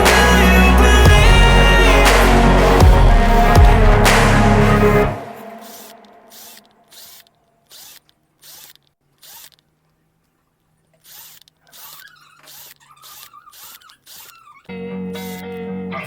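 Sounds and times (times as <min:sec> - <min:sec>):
hand tool rasping: 0:05.6 - 0:09.8, 0:10.9 - 0:14.6.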